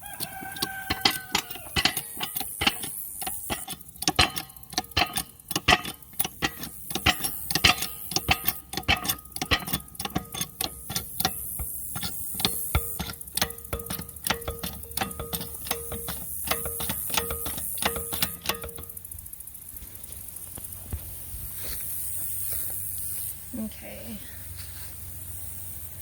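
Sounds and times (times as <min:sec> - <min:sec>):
rapid clicking and knocking: 0:00.0 - 0:19.4.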